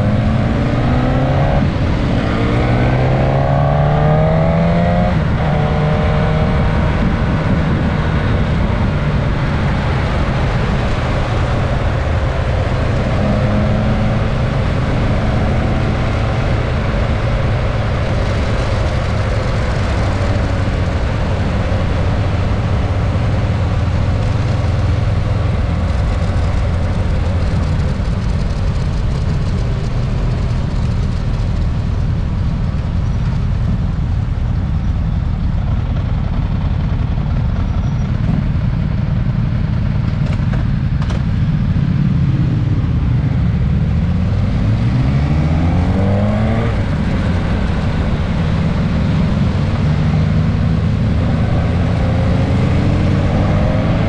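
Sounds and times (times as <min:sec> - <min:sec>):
motorcycle engine cruising: 0:00.0 - 0:54.0
wind and road noise: 0:00.0 - 0:54.0.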